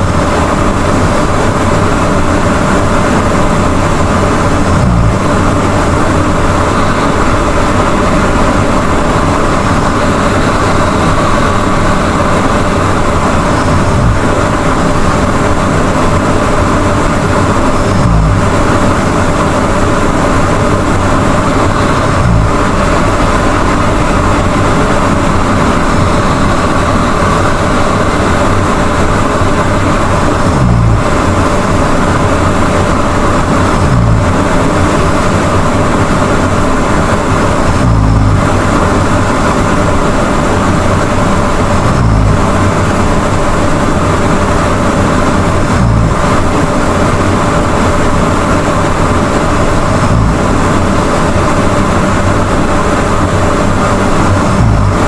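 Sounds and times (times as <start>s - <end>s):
person snoring loudly: 4.6s - 5.6s, 17.7s - 18.9s, 21.4s - 26.8s, 30.4s - 31.3s, 33.4s - 34.6s, 37.6s - 38.8s, 41.7s - 42.8s, 45.6s - 46.8s, 49.9s - 51.2s, 54.4s - 55.0s.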